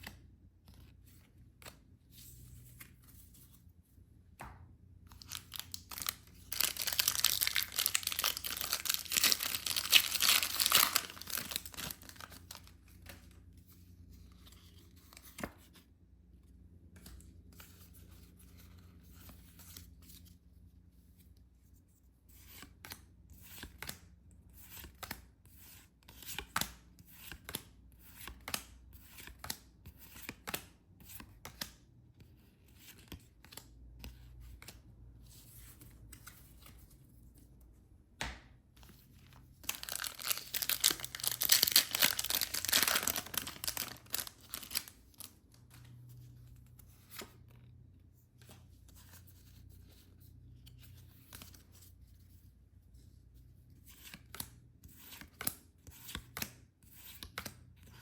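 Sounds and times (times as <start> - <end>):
packaging rustling: 5.2 - 12.7, 39.6 - 45.3
packaging ripping open: 5.3 - 12.6, 39.7 - 44.9.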